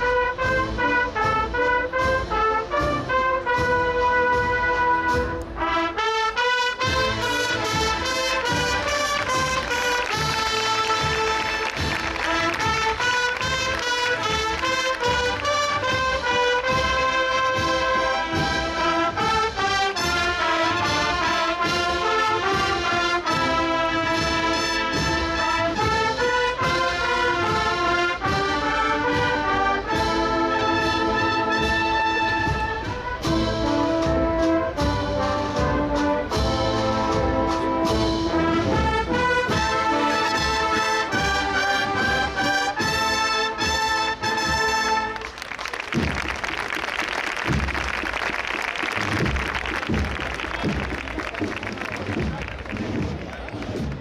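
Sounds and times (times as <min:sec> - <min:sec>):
brass band march: 0:00.0 - 0:54.0
drum beat: 0:06.8 - 0:26.1, 0:45.8 - 0:54.0.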